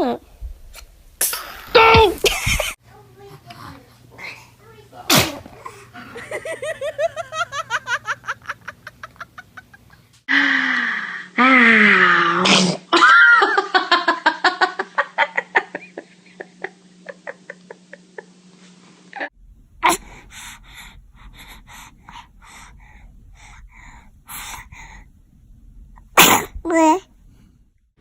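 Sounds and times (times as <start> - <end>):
baby sneezing: 5.1 - 5.5, 12.4 - 12.8, 26.2 - 27.0.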